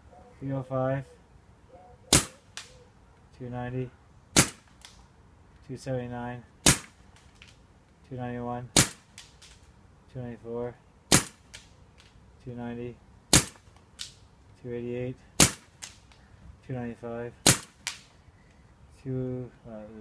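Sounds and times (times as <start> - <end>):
paintball marker shots cracking: 2.1 - 2.8, 4.4 - 5.0, 6.6 - 7.6, 8.8 - 9.6, 11.1 - 12.2, 13.3 - 14.2, 15.4 - 16.2, 17.4 - 18.1.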